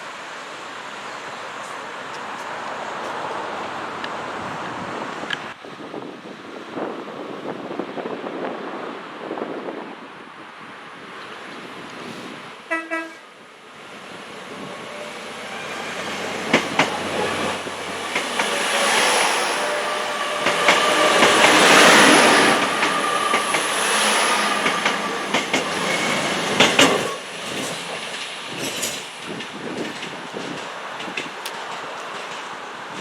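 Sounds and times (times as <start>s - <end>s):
train rumbling past: 11.2s - 33.0s
wheels clicking over rail joints: 16.2s - 33.0s.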